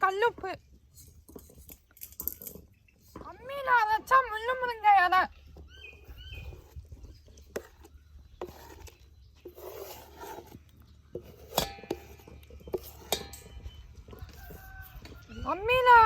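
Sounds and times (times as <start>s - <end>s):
kitchen utensils clinking: 11.3s - 13.8s.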